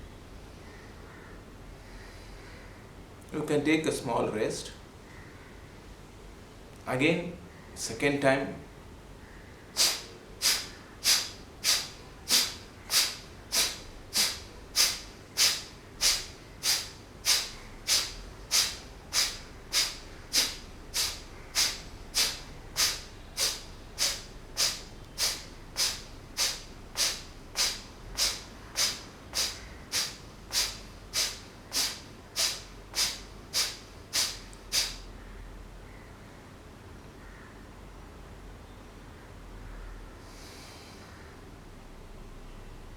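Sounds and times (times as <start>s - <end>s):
forceful nasal exhalations: 9.7s - 35.1s.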